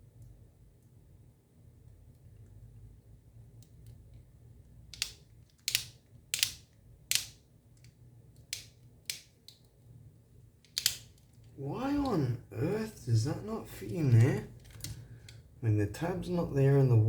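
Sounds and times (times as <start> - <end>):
plastic clicks and snaps: 4.9 - 9.7, 10.6 - 11.4.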